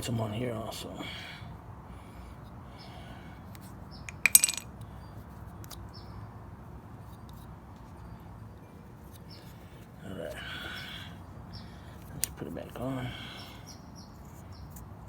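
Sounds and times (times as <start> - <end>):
small metal part clinking: 4.1 - 4.7.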